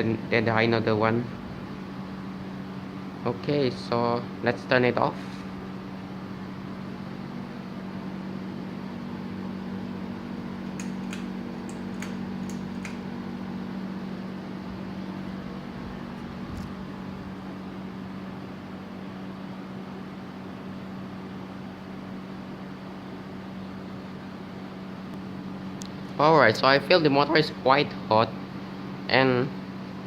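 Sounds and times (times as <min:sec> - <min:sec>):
ceiling fan motor hum: 0:00.0 - 0:30.0
light clicks: 0:10.7 - 0:13.0.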